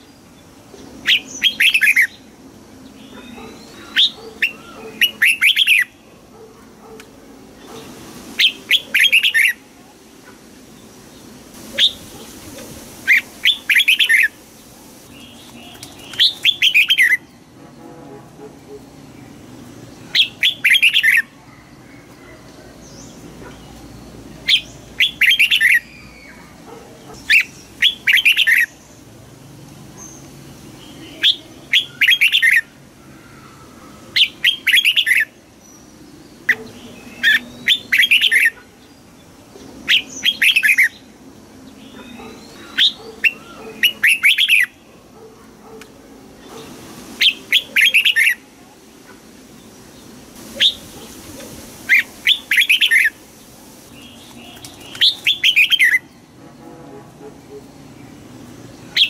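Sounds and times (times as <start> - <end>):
bulbul singing: 8.4 - 9.7, 20.1 - 21.4, 22.0 - 29.0, 53.9 - 56.2.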